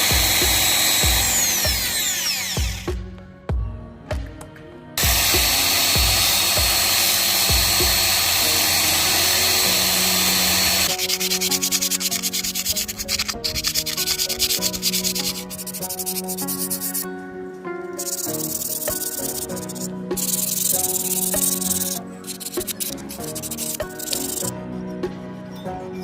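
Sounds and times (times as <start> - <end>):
background music: 0.0 - 26.0
short scratchy sanding strokes: 10.8 - 17.1, 18.0 - 24.5
sanding hiss with high whine: 18.0 - 24.5.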